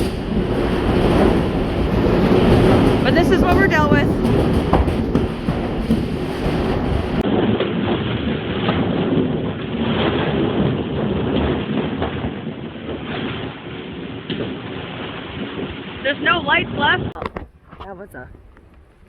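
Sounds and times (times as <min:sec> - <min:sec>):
rain: 0:00.0 - 0:07.2
wind buffeting metal building: 0:00.0 - 0:19.0.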